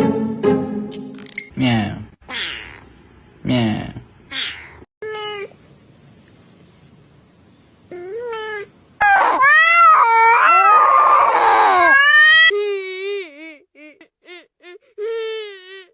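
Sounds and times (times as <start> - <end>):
cat meowing and yowling: 8.0 - 12.5.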